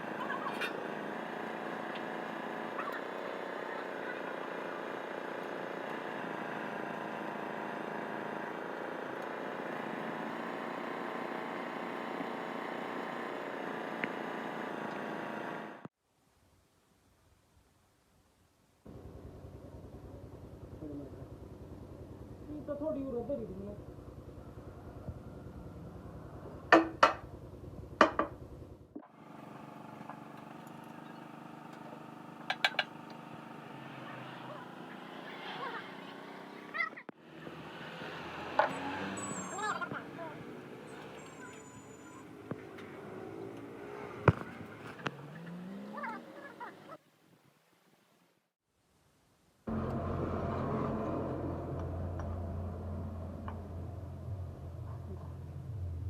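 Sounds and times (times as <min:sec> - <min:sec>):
engine running: 0:00.0 - 0:15.9, 0:18.9 - 0:47.0, 0:49.7 - 0:56.0
steady machine hum: 0:18.9 - 0:33.8, 0:49.7 - 0:56.0.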